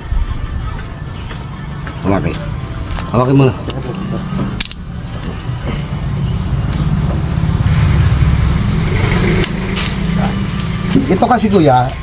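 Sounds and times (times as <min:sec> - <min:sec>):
diesel engine low rumble: 0:00.0 - 0:12.0.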